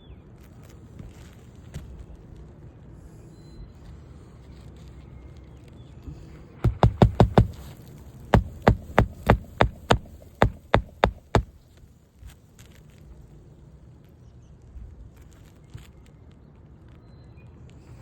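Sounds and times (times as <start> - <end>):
hammer driving nails into shingle: 6.6 - 7.8, 8.4 - 11.6.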